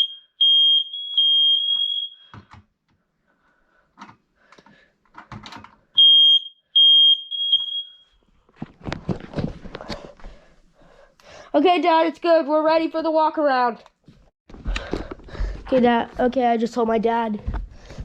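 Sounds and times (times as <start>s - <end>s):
smoke alarm test beeps: 0.0s - 2.5s, 6.0s - 8.2s
clicks and knocks: 4.0s - 5.8s.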